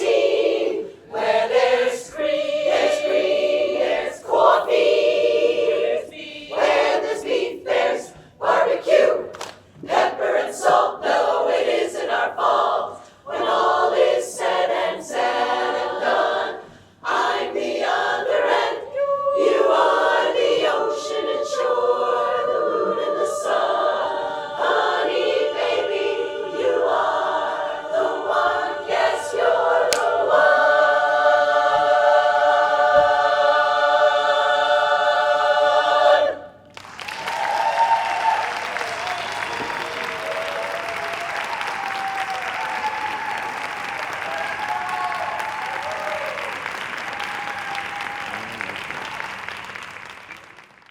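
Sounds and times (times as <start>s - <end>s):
women's chorus singing: 0.0s - 36.7s
audience applause and cheering: 36.7s - 50.9s.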